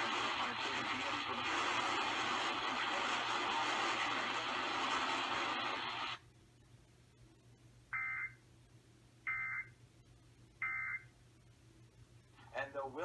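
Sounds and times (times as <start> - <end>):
radio hiss: 0.0 - 6.2.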